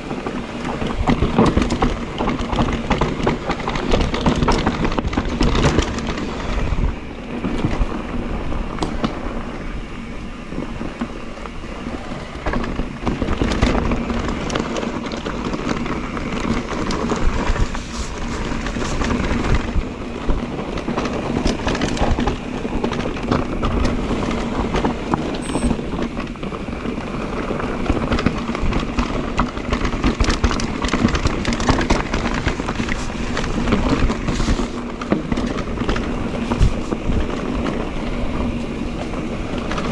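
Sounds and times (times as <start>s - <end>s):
bike clattering over rocks: 12.4s - 39.9s.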